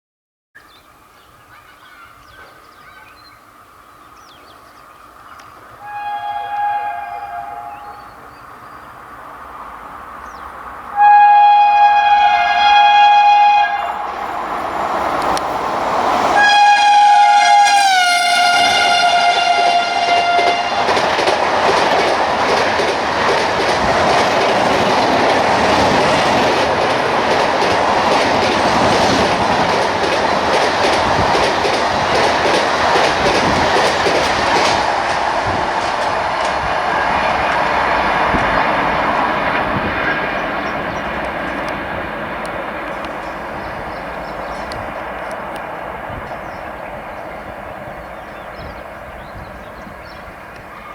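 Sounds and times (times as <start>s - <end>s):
train coaches rushing past: 4.6s - 50.9s
locomotive horn blast: 5.8s - 8.2s, 10.9s - 14.8s, 16.3s - 21.0s
wheels clicking over rail joints: 17.6s - 50.9s.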